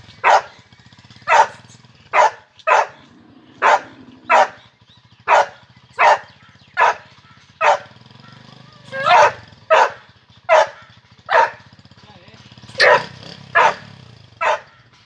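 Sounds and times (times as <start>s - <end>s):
dog barking: 0.2s - 0.6s, 1.3s - 4.6s, 5.3s - 8.0s, 8.9s - 11.7s, 12.8s - 14.9s.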